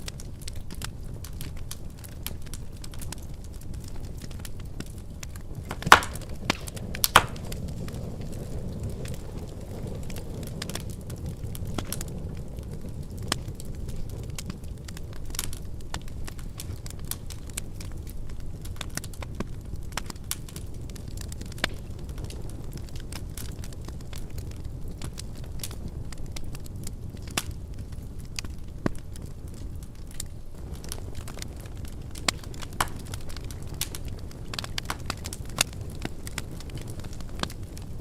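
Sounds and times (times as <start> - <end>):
wood fire crackling: 0.0 - 38.0.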